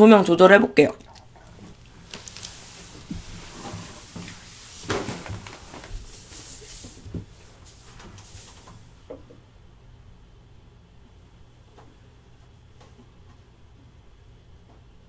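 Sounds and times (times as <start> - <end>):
rustling: 1.1 - 8.9.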